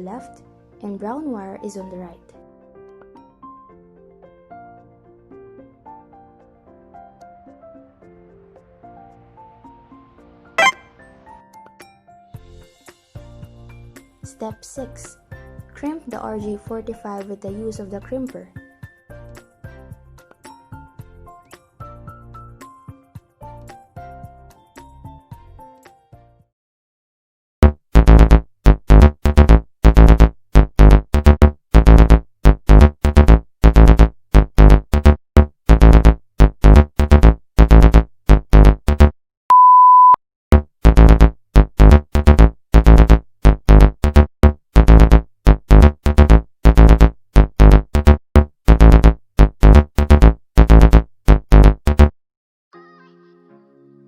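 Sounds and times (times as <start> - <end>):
choppy bass-heavy synthesizer music: 10.6 - 10.8, 27.6 - 39.1, 40.8 - 52.1
pure beep tone: 10.6 - 10.9, 39.5 - 40.2.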